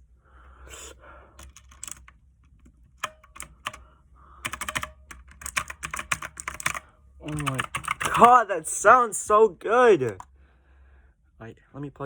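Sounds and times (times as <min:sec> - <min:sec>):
mechanical keyboard keys clicking: 0:01.4 - 0:03.8, 0:04.4 - 0:08.4.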